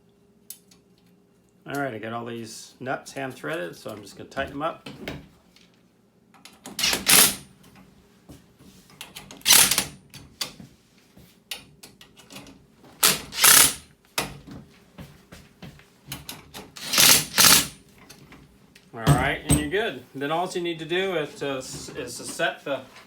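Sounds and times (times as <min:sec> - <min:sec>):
mechanical rattling of tool: 0:06.7 - 0:07.4, 0:09.4 - 0:09.9, 0:13.0 - 0:13.8, 0:16.8 - 0:17.8.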